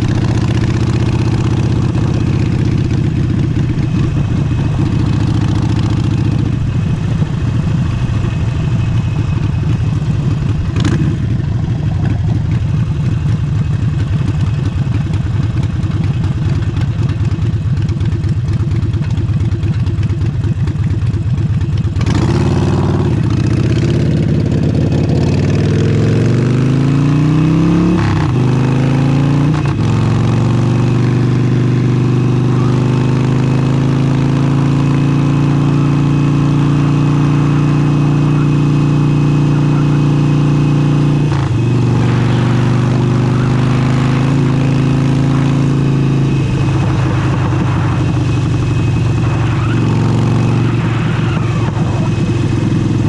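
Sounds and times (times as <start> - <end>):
motorcycle engine running: 0.0 - 53.0.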